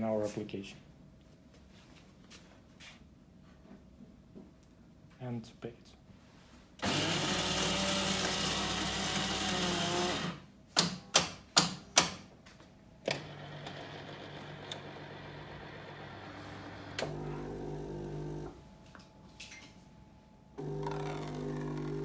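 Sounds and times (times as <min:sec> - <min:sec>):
vending machine motor running: 0:06.8 - 0:10.4, 0:13.0 - 0:18.6, 0:20.6 - 0:22.0.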